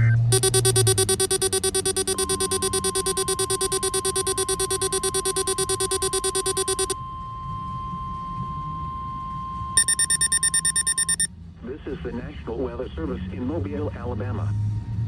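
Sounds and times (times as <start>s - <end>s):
pulsing electronic alert buzz: 0.3s - 7.0s, 9.8s - 11.3s
steady warning alarm tone: 0.3s - 7.0s, 9.0s - 11.3s.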